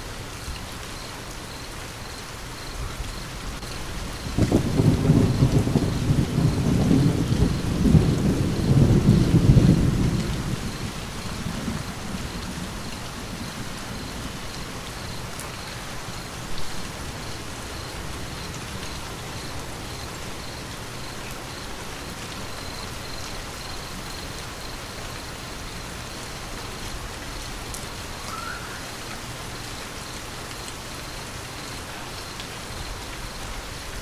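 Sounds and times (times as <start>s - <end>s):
steady rain falling: 0.0s - 34.0s
low rumble of thunder: 2.8s - 24.4s.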